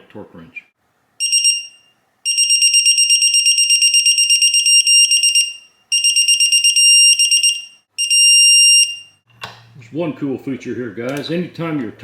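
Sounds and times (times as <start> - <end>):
steady beep tone: 1.2 - 9.2.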